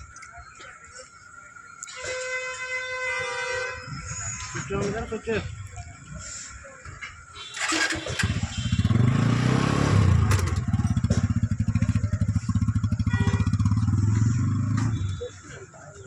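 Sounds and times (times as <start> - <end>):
motorcycle engine running: 7.5 - 15.4.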